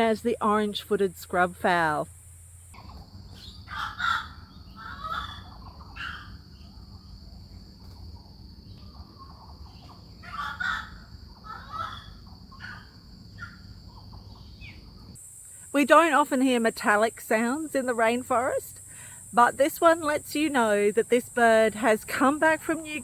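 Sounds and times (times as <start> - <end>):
bird cackling calls: 2.8 - 7.1, 7.7 - 14.8.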